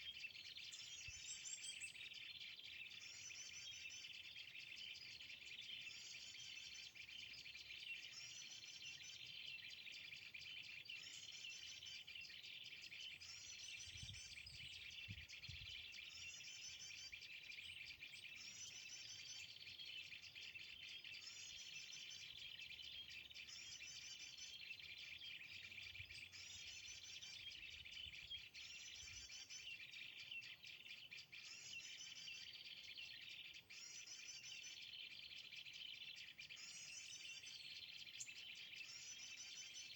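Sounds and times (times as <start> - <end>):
songbird calling: 0.0 - 39.9.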